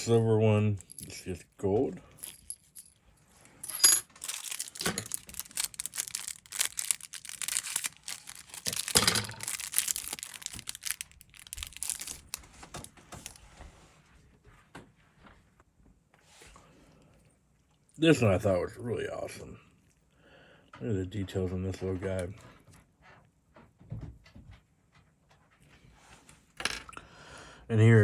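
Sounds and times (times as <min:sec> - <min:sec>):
plastic packaging crinkling and tearing: 0:04.2 - 0:13.4.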